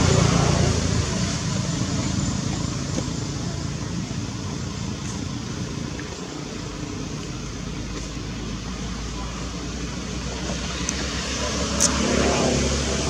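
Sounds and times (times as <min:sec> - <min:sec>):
low rumbling background noise: 0:00.0 - 0:13.0.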